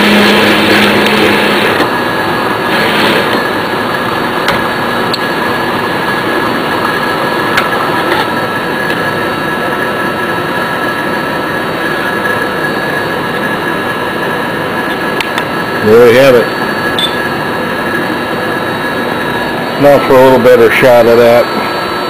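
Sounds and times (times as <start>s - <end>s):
hole saw cutting metal: 0.0s - 3.6s.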